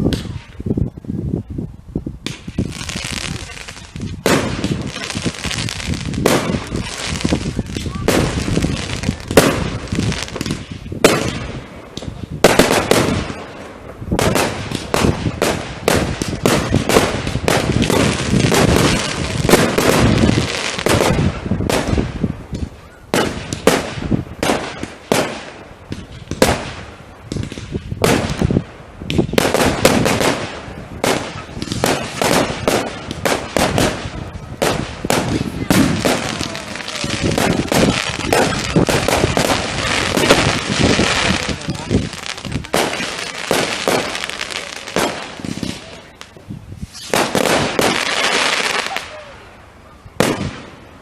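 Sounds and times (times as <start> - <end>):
fireworks cracking and banging: 0.0 - 0.7, 2.2 - 49.4, 50.2 - 50.9.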